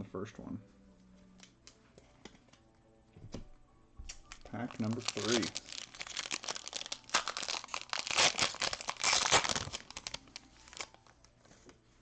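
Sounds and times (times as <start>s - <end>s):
foil wrapper being torn open: 4.3s - 11.1s.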